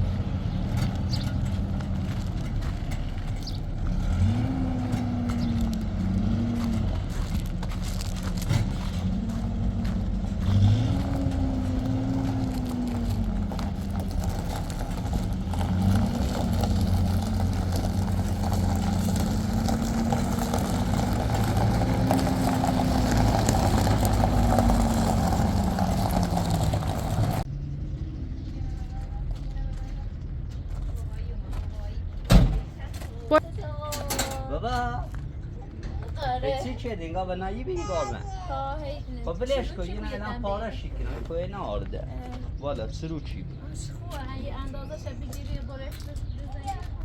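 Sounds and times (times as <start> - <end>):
engine revving: 0.0 - 28.6.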